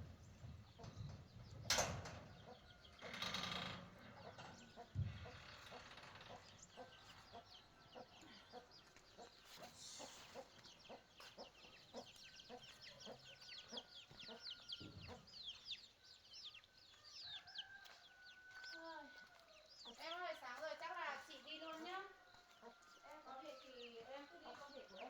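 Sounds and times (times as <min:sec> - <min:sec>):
chickens clucking: 0:00.0 - 0:20.2.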